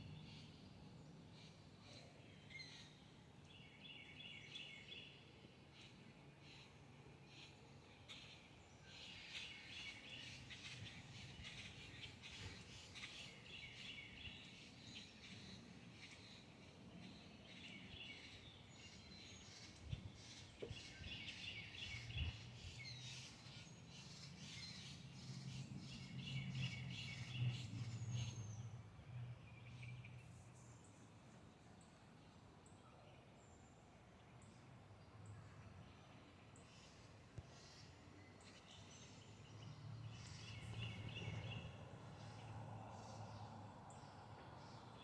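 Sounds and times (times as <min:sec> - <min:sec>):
birds chirping: 0:38.6 - 0:44.9.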